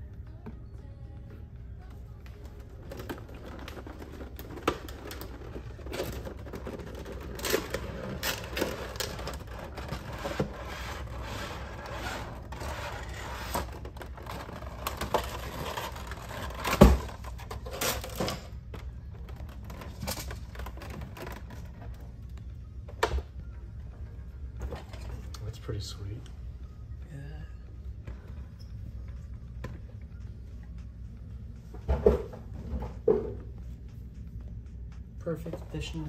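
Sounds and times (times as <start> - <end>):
packaging scraping and rubbing: 2.9 - 18.4.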